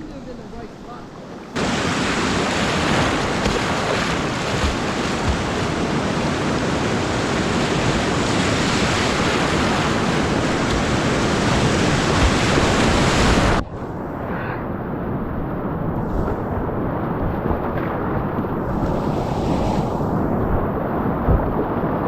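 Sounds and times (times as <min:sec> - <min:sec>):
wind noise on microphone: 0:01.4 - 0:22.0
whitewater rushing: 0:01.5 - 0:13.6.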